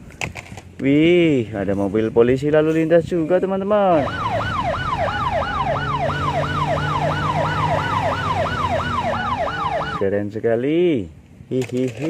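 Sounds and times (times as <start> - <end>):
toy electronic siren wailing: 4.0 - 10.0.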